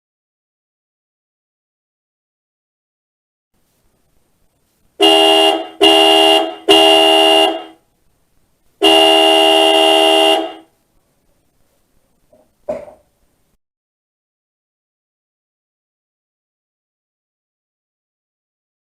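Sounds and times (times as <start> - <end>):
car horn honking: 5.0 - 7.8, 8.8 - 10.7
brief knock: 12.3 - 13.1.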